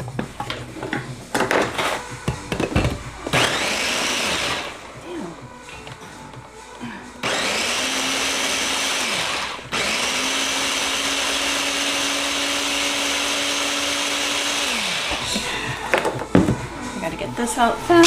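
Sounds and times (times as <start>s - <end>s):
blender running: 3.3s - 4.9s, 7.2s - 15.8s.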